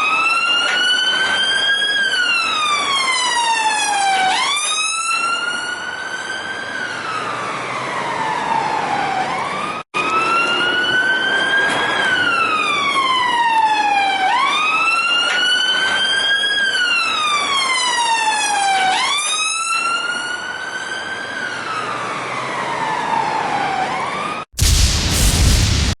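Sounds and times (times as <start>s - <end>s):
siren wailing: 0.0s - 25.5s
loud burst of noise: 24.6s - 26.0s.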